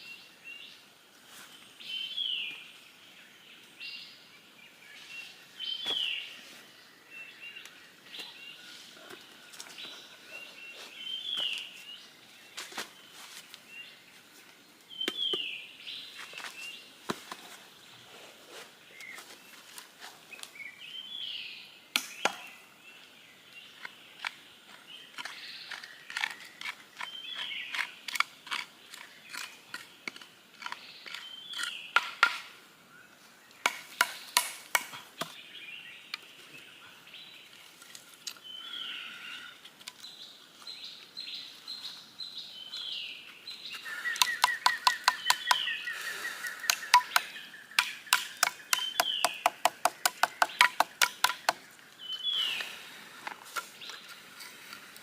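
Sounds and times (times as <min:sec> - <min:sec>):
bird chirping call: 0:40.8 - 0:52.9
sharp irregular knocks and taps: 0:44.2 - 0:45.6, 0:46.7 - 0:51.6.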